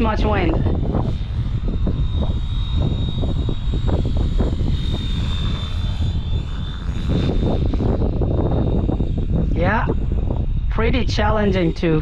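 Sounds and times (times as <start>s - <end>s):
rc helicopter motor whine: 0.0s - 12.0s
wind buffeting microphone: 0.0s - 12.0s.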